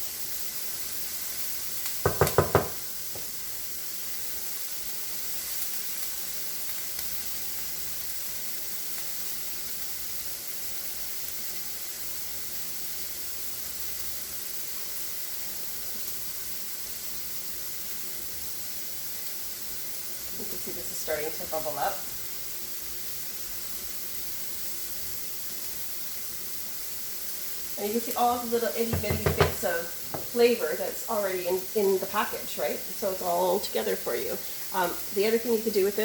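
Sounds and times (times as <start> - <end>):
food sizzling in a hot pan: 0.0 - 36.0
ringing knocks: 2.1 - 2.8, 28.9 - 30.3.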